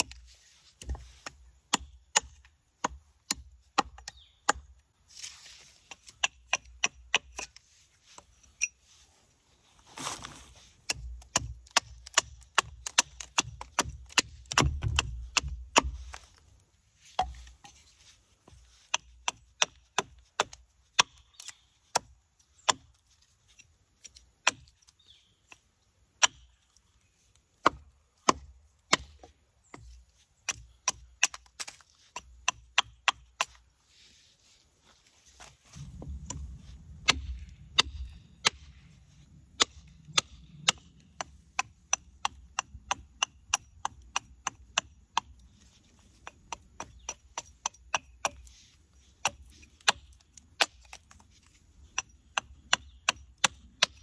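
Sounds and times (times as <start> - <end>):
carving tool cutting wood: 39.6 - 51.1, 52.0 - 54.0.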